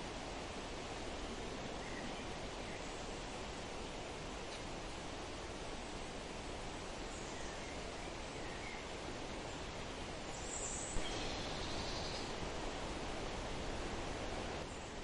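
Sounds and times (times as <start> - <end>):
wind rushing through trees: 0.0 - 15.0
faint bird chirps: 1.8 - 3.1, 7.1 - 8.9, 10.3 - 12.4.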